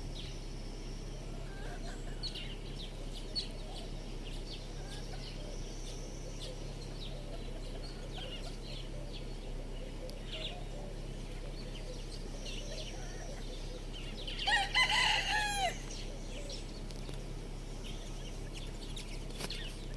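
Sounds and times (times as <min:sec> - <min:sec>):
steady low hum: 0:00.0 - 0:19.9
rooster crowing: 0:01.3 - 0:02.5, 0:14.2 - 0:16.5.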